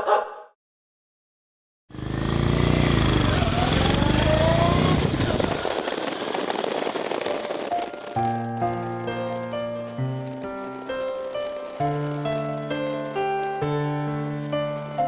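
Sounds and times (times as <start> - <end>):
motorcycle engine accelerating: 1.9 - 8.0
rushing wind noise: 4.7 - 8.2.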